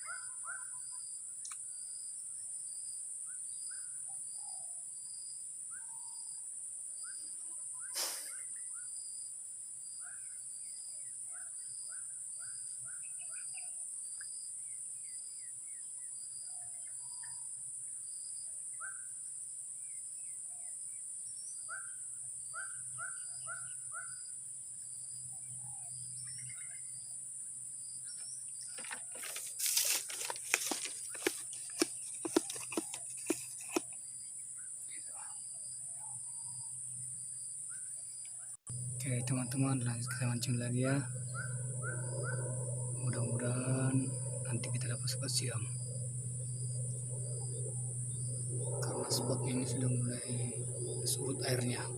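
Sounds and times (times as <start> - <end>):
insect drone: 0.0 - 51.9
pulsing insect chirp: 0.0 - 51.9
handling clatter: 28.7 - 34.0
birds chirping: 30.2 - 51.9.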